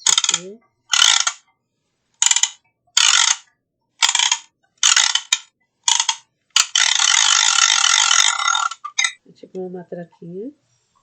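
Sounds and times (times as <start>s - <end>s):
hand ratchet rattle: 0.0s - 1.4s, 2.2s - 9.2s.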